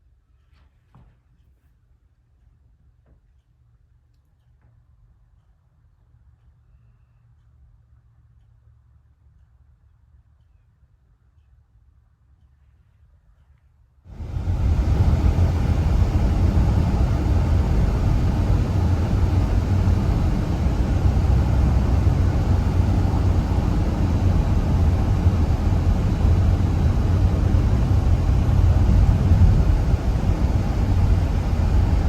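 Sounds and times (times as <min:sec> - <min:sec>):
loud steady low rumble: 0:14.1 - 0:32.0.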